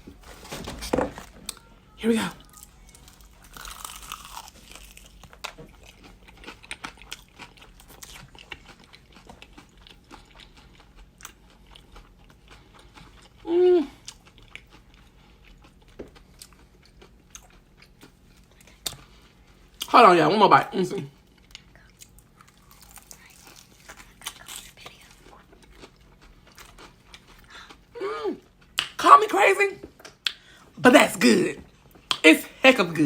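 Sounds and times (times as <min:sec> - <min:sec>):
crunchy chewing: 0:02.4 - 0:19.9, 0:21.3 - 0:29.0
person humming mm: 0:13.4 - 0:14.0.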